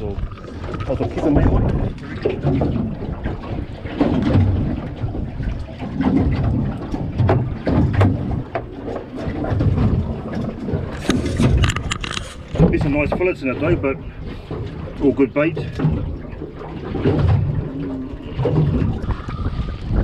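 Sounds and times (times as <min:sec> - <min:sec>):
wind buffeting microphone: 0:00.0 - 0:20.0
knocks and clicks: 0:06.0 - 0:13.2.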